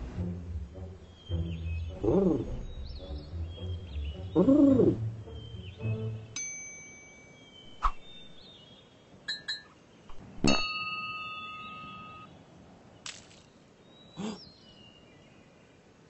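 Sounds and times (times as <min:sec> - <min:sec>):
ringing tone: 0:10.5 - 0:12.3.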